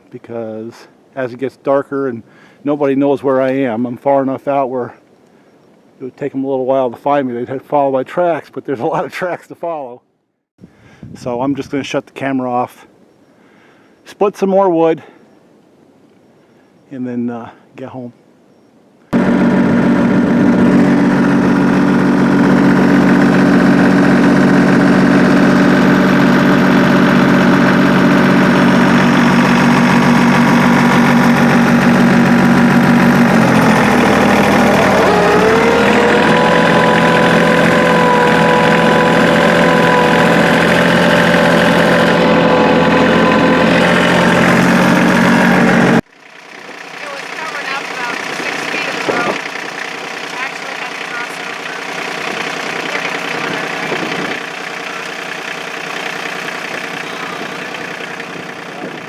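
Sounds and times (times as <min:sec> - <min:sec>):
engine running: 0:19.1 - 0:59.0.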